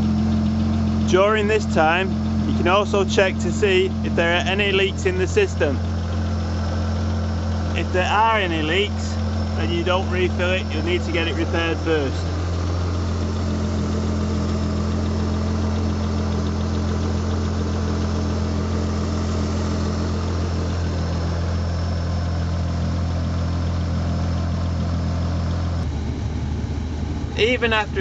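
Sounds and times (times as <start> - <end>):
car engine idling: 0.0 - 28.0
air conditioning running: 1.0 - 23.0.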